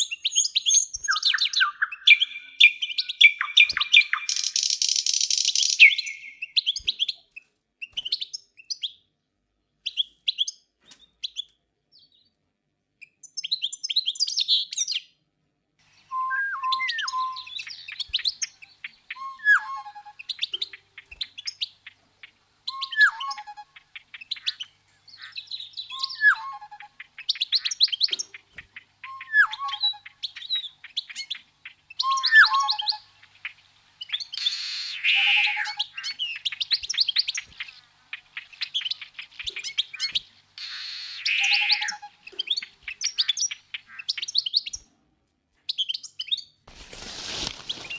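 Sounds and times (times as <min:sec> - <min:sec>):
songbirds chirping and twittering: 0:00.0 - 0:12.4, 0:15.8 - 0:45.0
bird two-note call: 0:40.6 - 0:42.1.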